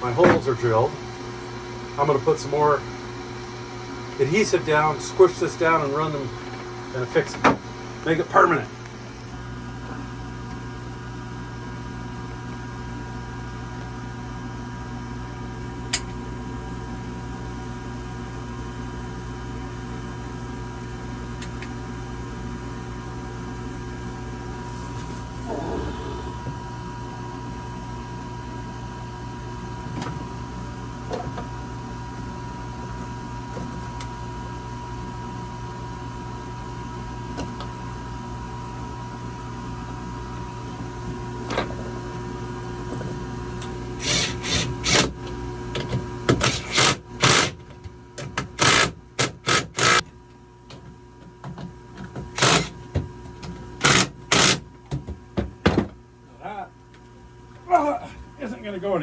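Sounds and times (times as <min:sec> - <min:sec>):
machine hum: 0:24.7 - 0:26.8
power tool driving bolts: 0:44.0 - 0:45.1, 0:52.4 - 0:52.7, 0:53.8 - 0:54.6.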